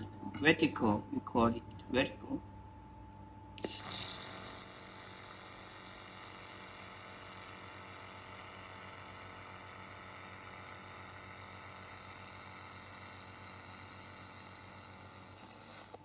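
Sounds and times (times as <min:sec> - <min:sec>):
laser welder hissing: 0:03.6 - 0:09.2.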